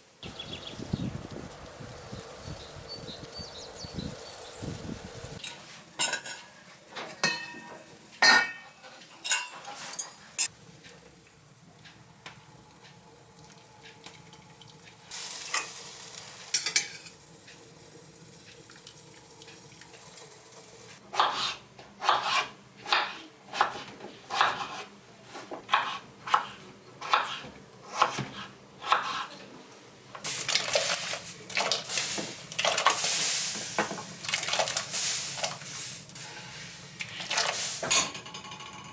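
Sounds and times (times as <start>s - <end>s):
frying hiss: 0.0s - 8.2s, 9.6s - 21.0s, 30.2s - 38.1s.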